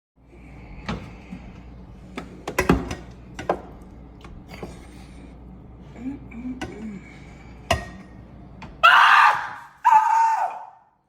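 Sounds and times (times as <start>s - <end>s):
steady low hum: 0.2s - 8.9s.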